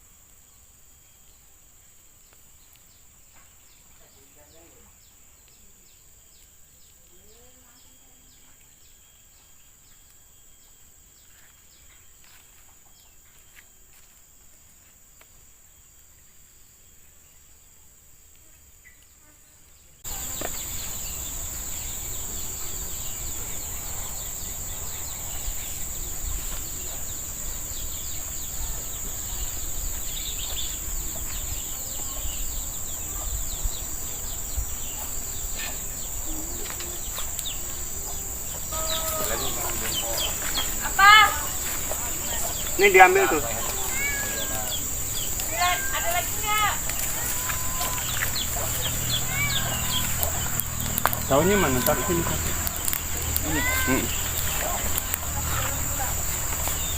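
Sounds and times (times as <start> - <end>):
insects droning: 0.0 - 56.9
noisy hiss: 15.0 - 56.9.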